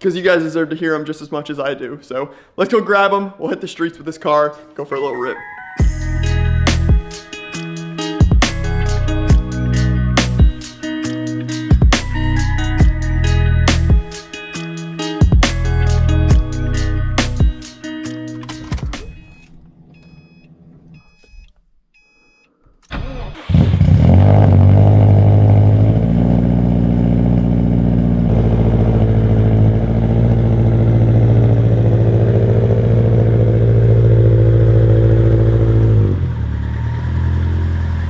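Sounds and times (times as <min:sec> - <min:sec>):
short electronic beeps: 0:19.0 - 0:22.5
car engine starting and idling: 0:22.8 - 0:38.0.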